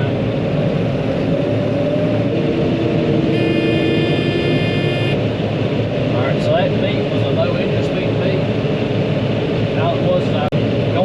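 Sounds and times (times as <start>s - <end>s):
high electronic warning beep: 3.4s - 5.2s.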